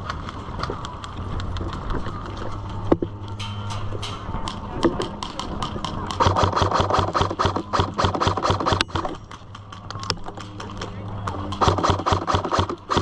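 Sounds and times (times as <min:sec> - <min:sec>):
airsoft gun firing: 0:06.2 - 0:09.1, 0:11.6 - 0:13.0.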